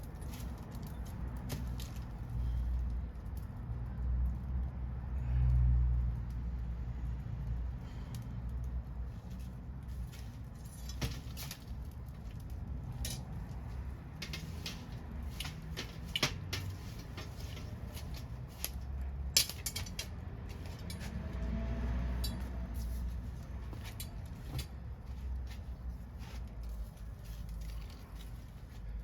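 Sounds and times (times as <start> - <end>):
wood fire crackling and popping: 10.3 - 19.8.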